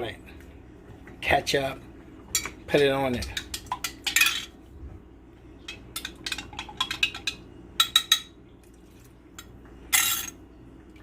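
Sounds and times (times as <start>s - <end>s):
spoon clinking against a pot: 5.6s - 8.4s
spoon clattering: 5.7s - 8.3s.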